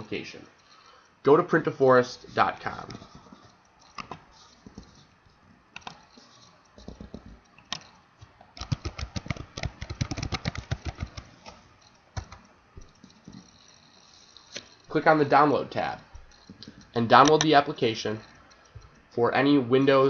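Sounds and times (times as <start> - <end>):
typing on computer keyboard: 5.8 - 8.0, 8.6 - 13.8.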